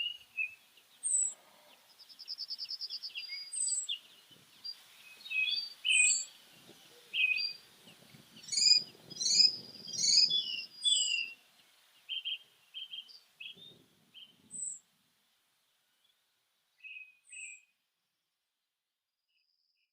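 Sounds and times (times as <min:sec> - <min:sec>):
small songbirds chirping: 0:00.0 - 0:17.8.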